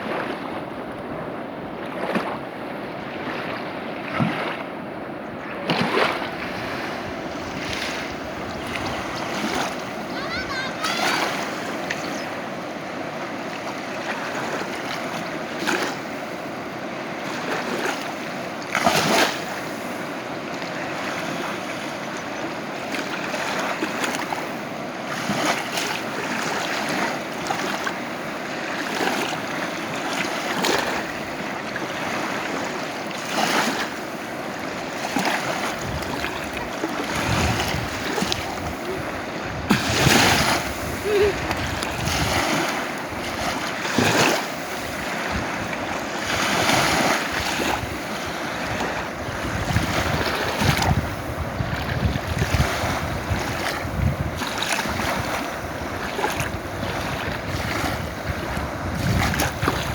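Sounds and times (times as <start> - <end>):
river rushing: 3.1 - 59.9.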